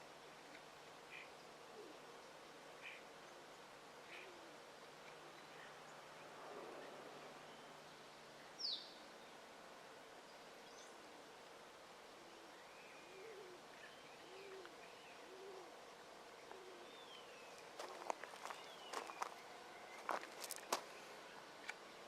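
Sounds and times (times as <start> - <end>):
short low bird calls: 2.8 - 5.8, 12.1 - 15.8.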